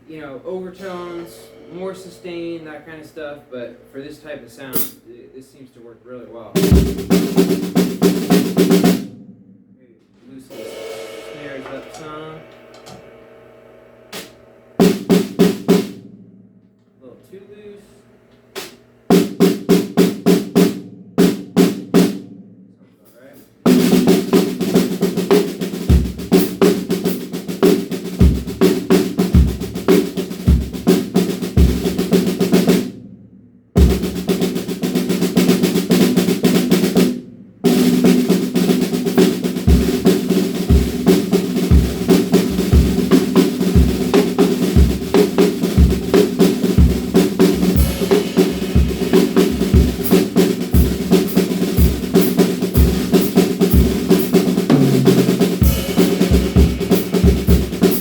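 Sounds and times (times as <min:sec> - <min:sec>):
snare drum rolls: 0:06.6 - 0:09.1, 0:10.4 - 0:13.2, 0:23.7 - 0:33.0, 0:33.8 - 0:58.0
bass drum pulse: 0:39.3 - 0:58.0.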